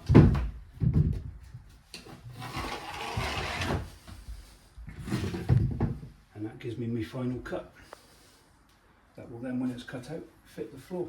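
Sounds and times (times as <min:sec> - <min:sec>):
scraping on wooden floorboard: 0:02.0 - 0:05.7.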